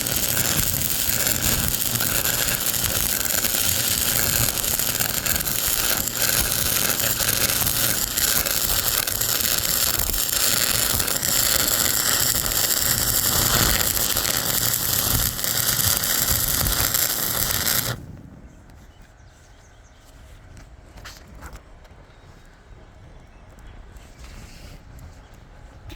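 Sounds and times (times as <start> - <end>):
electric arc welding crackle: 0.0 - 18.1.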